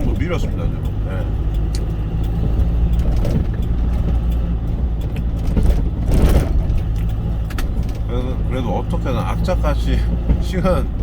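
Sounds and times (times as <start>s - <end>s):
truck engine droning: 0.0s - 11.0s.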